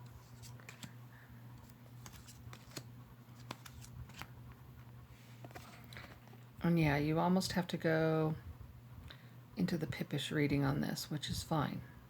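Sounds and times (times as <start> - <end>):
low steady hum: 0.0 - 12.0
cards clicking and tapping: 0.3 - 1.0, 1.6 - 4.3.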